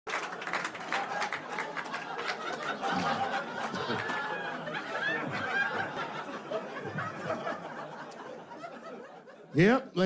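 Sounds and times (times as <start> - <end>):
people clapping: 0.1 - 6.1
audience laughing: 0.2 - 9.9.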